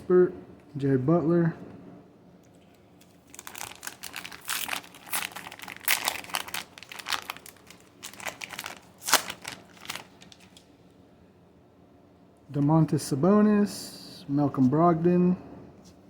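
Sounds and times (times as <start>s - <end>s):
foil wrapper crinkling and tearing: 3.0s - 10.6s.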